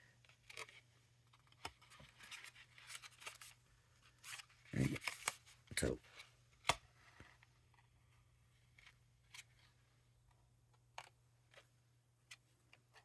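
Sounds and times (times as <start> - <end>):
card being handled: 0.3 - 7.8.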